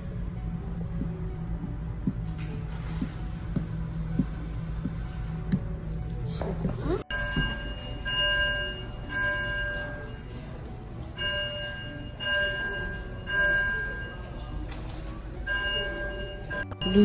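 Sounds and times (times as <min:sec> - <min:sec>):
steady low rumble: 0:00.0 - 0:08.2
bell-like chime tones: 0:07.1 - 0:10.6.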